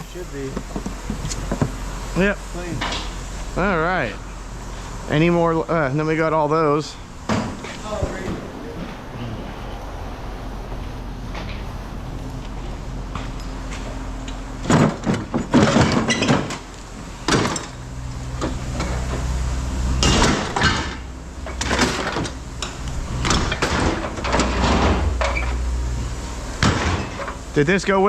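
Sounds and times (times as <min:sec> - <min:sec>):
low hum: 0:00.0 - 0:26.6.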